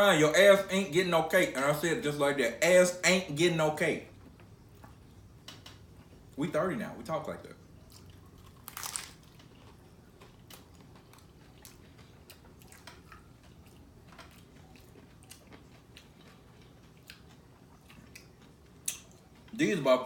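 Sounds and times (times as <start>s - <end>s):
person chewing food: 7.8s - 19.6s.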